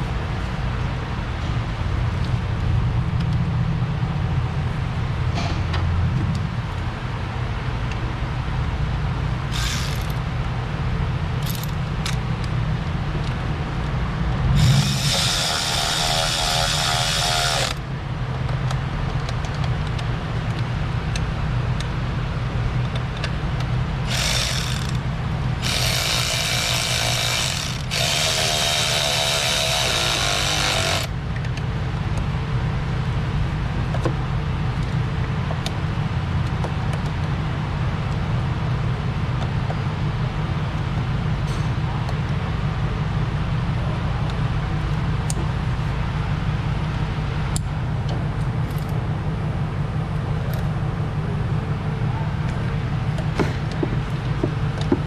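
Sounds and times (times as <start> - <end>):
low steady hum: 0.0 - 55.0
power tool spinning fasteners: 9.5 - 10.2, 11.4 - 12.2, 14.6 - 17.8, 24.0 - 31.1.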